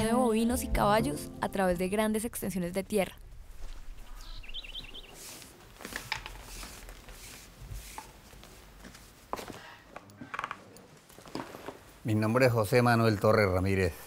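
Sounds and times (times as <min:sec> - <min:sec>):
bird chirping: 0:04.1 - 0:05.4.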